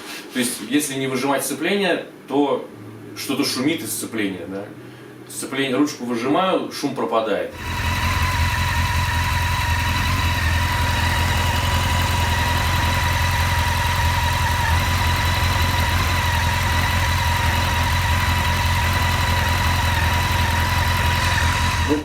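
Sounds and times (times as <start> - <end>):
high clutch whine: 7.5 - 22.0
motorcycle engine idling: 7.6 - 22.0.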